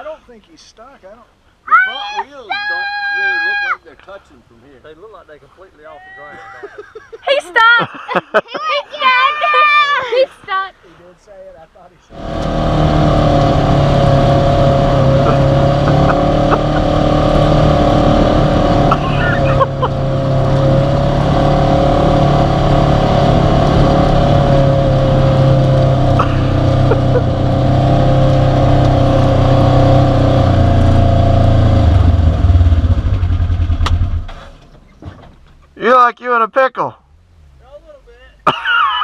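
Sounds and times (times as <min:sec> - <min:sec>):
off-road vehicle engine running: 0:12.1 - 0:35.8.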